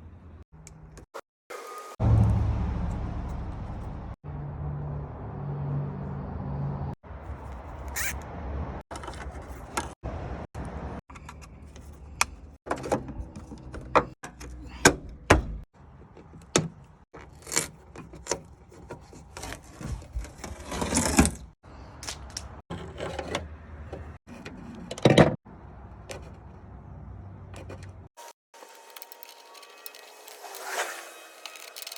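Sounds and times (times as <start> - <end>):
clicks knocks and scrapes: 16.0 - 25.4.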